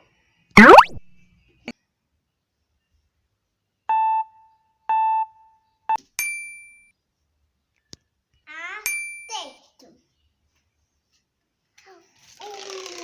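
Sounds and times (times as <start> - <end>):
electronic beeps: 0.6 - 1.1.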